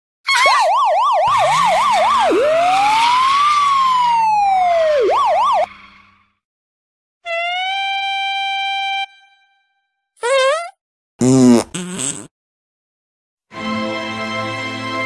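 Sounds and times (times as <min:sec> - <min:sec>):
emergency siren yelp and wail: 0:00.3 - 0:06.1, 0:07.3 - 0:09.1.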